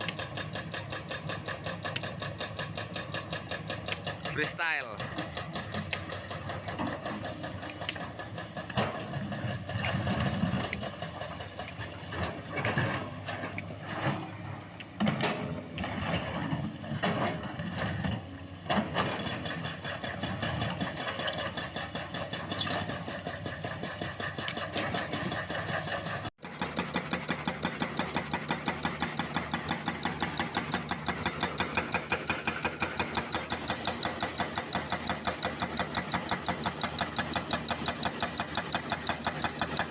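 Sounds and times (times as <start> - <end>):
diesel engine running: 0.0 - 39.9
rapid steady hammering: 26.4 - 39.9.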